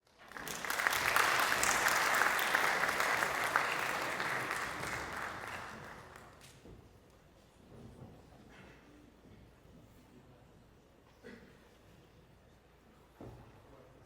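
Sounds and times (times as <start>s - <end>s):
audience applauding: 0.0s - 6.5s.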